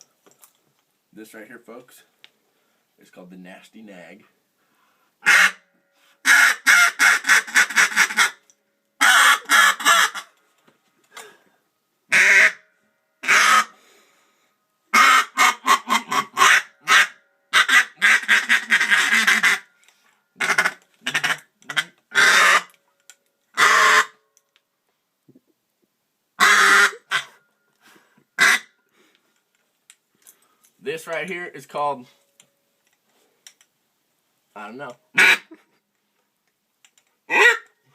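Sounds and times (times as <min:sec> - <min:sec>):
duck call quacks: 0:05.2 - 0:05.6, 0:06.2 - 0:08.4, 0:09.0 - 0:10.3, 0:12.1 - 0:12.6, 0:13.2 - 0:13.8, 0:14.9 - 0:19.7, 0:20.4 - 0:22.7, 0:23.6 - 0:24.1, 0:26.4 - 0:27.4, 0:28.4 - 0:28.7, 0:35.1 - 0:35.8, 0:37.3 - 0:37.7.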